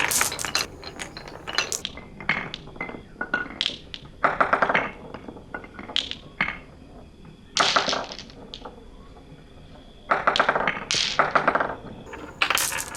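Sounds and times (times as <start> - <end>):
marbles rattling through wooden run: 0.0 - 1.8, 12.1 - 12.9.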